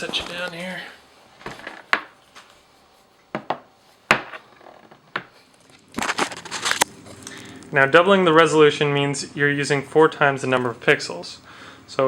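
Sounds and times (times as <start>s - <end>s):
objects knocking on hard tabletop: 3.3s - 5.3s.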